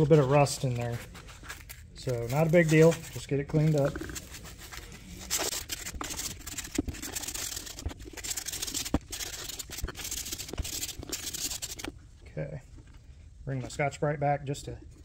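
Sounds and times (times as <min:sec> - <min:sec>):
sandpaper scratching metal: 0:03.6 - 0:11.9.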